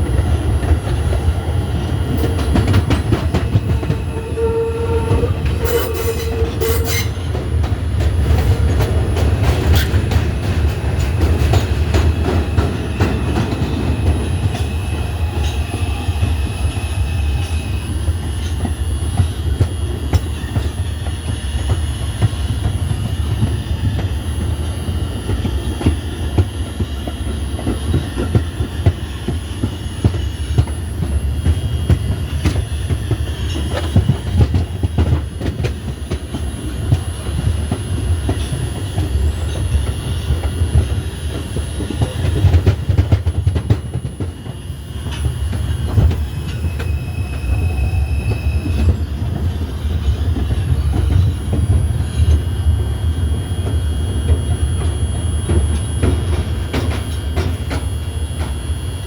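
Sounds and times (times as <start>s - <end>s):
subway train rumbling: 0.0s - 59.0s.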